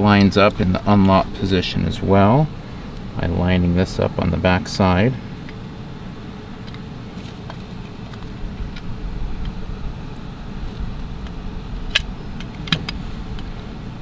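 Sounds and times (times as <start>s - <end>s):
low rumble: 0.0s - 4.3s, 7.9s - 14.0s
lock parts clicking: 11.9s - 13.0s.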